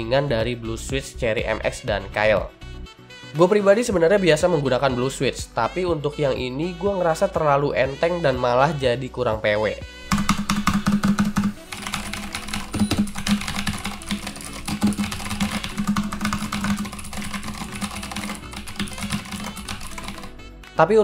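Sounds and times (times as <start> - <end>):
background music: 0.0 - 21.0
mechanical keyboard typing: 10.1 - 20.4.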